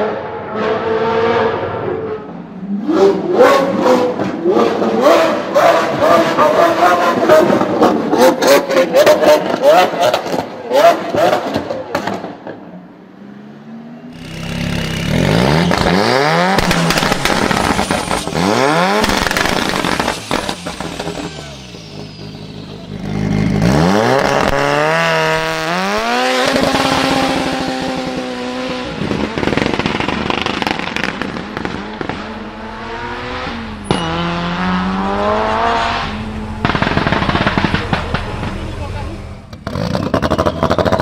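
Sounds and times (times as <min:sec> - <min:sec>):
car engine revving: 0:14.1 - 0:41.0
exhaust pops and crackles: 0:15.6 - 0:24.8, 0:25.4 - 0:32.6, 0:36.0 - 0:41.0.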